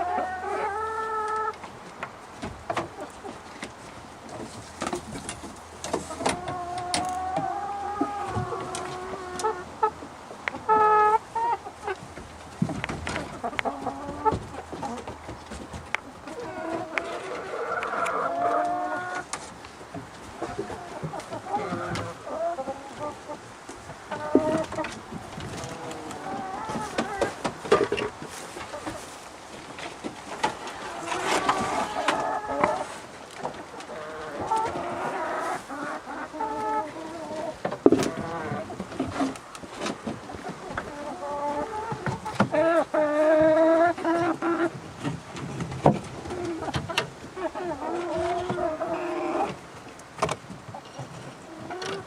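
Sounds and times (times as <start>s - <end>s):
chicken squawk: 0.0s - 1.5s, 30.7s - 33.0s
chickens clucking: 0.0s - 52.0s.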